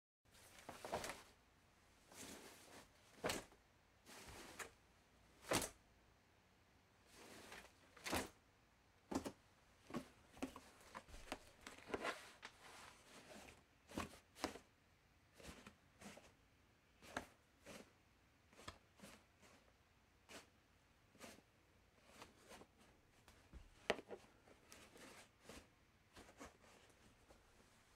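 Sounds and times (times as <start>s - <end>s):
laundry basket knocks and rustles: 2.2s - 3.5s.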